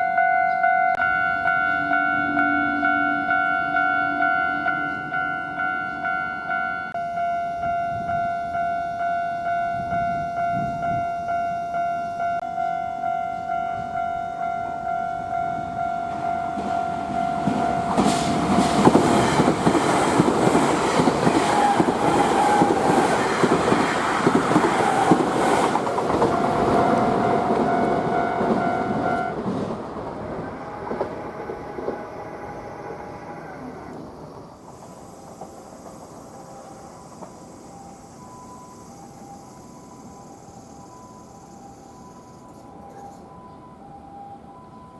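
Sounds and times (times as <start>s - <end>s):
level crossing bell ringing: 0.0s - 18.0s
train wheels clattering over rail joints: 17.4s - 32.0s.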